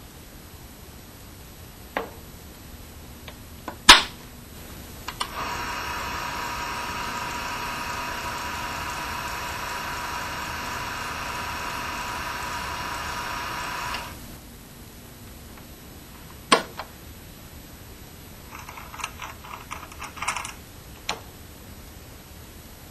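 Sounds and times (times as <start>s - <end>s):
disc repair machine whining: 4.6s - 14.4s, 18.5s - 21.2s
sharp clicks: 5.1s - 6.0s.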